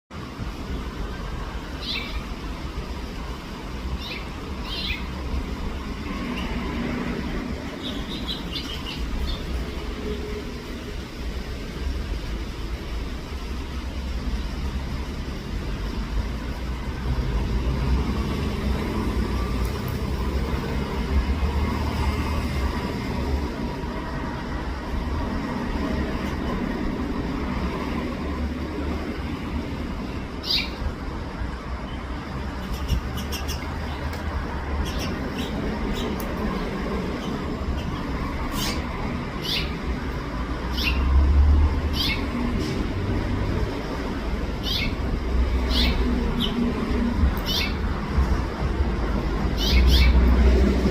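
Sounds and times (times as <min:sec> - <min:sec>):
finches chirping: 0:01.8 - 0:02.2, 0:04.0 - 0:05.1, 0:07.8 - 0:09.5, 0:30.4 - 0:30.8, 0:34.8 - 0:39.8, 0:40.7 - 0:41.1, 0:41.9 - 0:42.3, 0:44.6 - 0:45.0, 0:45.6 - 0:46.6, 0:47.4 - 0:47.8, 0:49.6 - 0:50.2
finch chirp sweeping down: 0:04.0 - 0:05.1, 0:30.4 - 0:30.8, 0:39.4 - 0:39.8, 0:40.7 - 0:41.1, 0:44.6 - 0:45.0, 0:45.7 - 0:46.6, 0:49.6 - 0:50.2.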